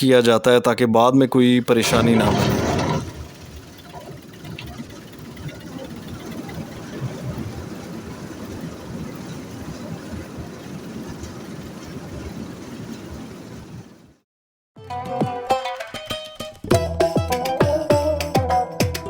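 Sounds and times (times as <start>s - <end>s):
wheat thresher running: 1.7s - 13.7s.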